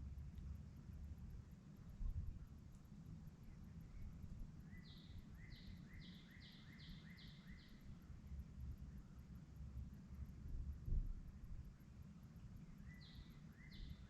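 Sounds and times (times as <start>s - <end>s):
faint low rumble: 0.0s - 6.4s, 7.4s - 14.0s
songbird singing: 3.4s - 8.4s, 11.7s - 14.0s.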